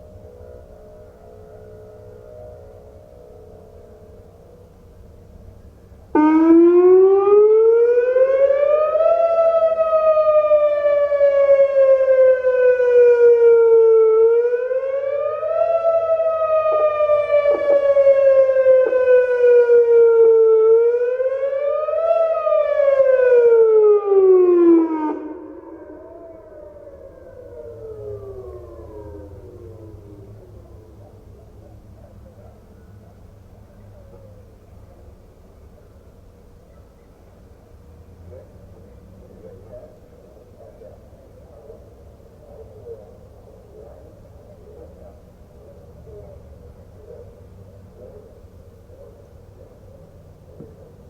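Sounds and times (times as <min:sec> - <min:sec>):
electronic siren wailing: 0:06.2 - 0:31.2.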